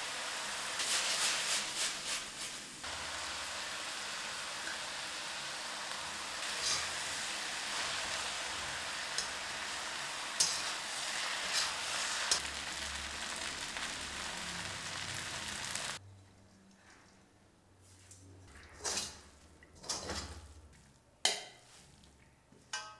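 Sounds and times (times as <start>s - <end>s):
food sizzling in hot oil: 0.0s - 16.0s
oil popping and crackling: 2.8s - 16.0s.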